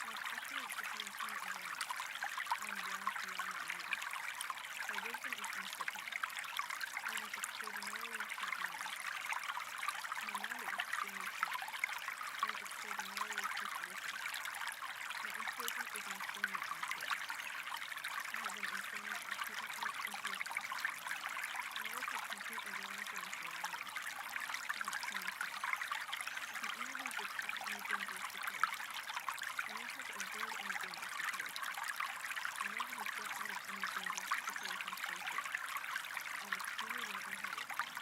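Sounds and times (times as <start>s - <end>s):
faint low voice murmuring: 0.0s - 1.9s, 4.9s - 5.9s, 7.0s - 8.8s, 15.2s - 17.2s, 18.2s - 20.5s, 26.3s - 28.4s
running water: 0.0s - 38.0s.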